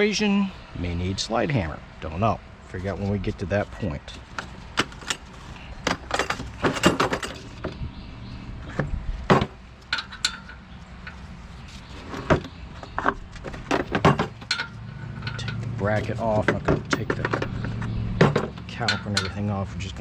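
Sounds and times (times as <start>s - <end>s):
metal hand tools clanking: 4.0s - 7.6s, 9.3s - 19.6s.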